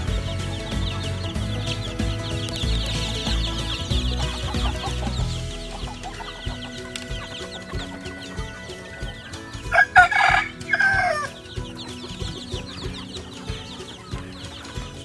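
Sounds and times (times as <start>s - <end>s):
chickens clucking: 0.0s - 15.0s
rooster crowing: 9.7s - 11.3s.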